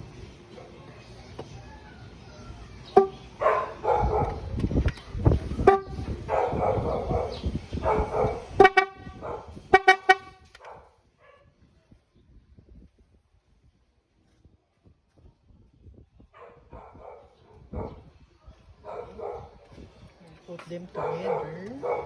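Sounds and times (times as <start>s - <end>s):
electric car horn blasts: 5.6s - 6.1s, 8.6s - 10.5s.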